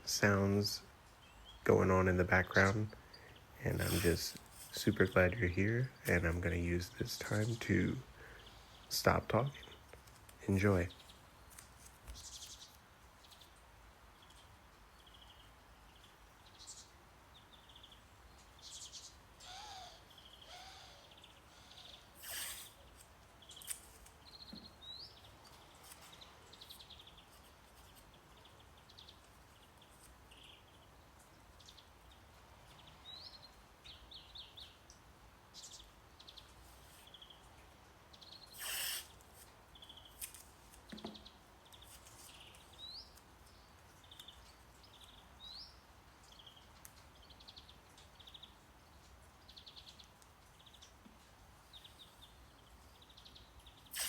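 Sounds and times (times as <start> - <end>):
small birds chirping: 0.0 - 54.0
steady hiss: 1.6 - 12.7, 19.1 - 24.1, 37.9 - 39.6
scratchy noise: 3.7 - 4.8.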